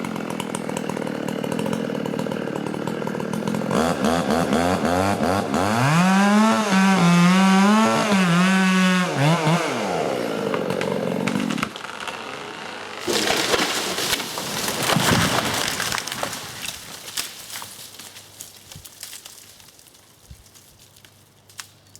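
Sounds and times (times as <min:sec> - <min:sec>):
chainsaw running: 0:00.0 - 0:17.0
tree crashing down: 0:13.0 - 0:21.1.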